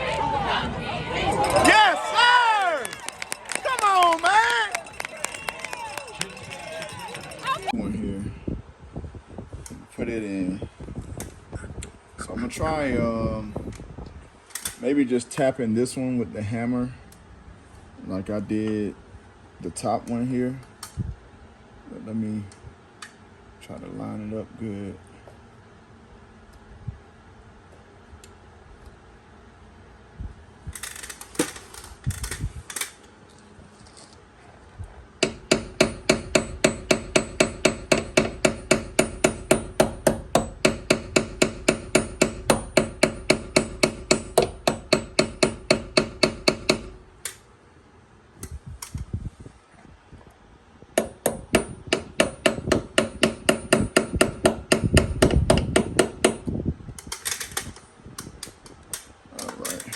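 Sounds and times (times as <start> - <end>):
hammer striking metal: 35.2 - 47.0, 51.0 - 56.5.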